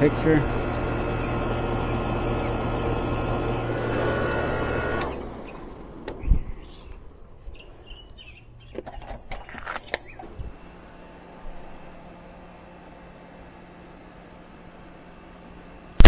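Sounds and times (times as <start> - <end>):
birds chirping: 0.0 - 4.0, 4.6 - 10.5
air conditioner humming: 0.0 - 16.0.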